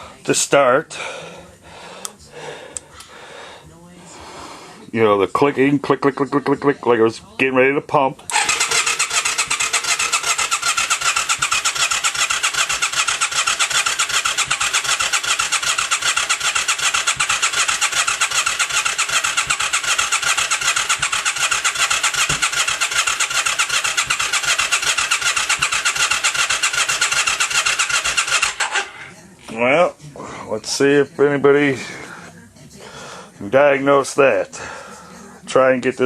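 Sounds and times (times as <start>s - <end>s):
motorcycle electric starter cranking: 8.3s - 29.0s.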